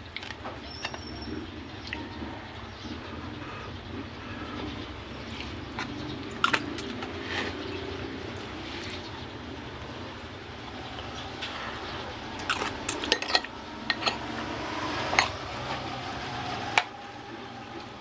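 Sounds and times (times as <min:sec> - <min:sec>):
utensils clinking on plate: 0:05.8 - 0:07.6, 0:12.4 - 0:14.3, 0:15.1 - 0:15.4.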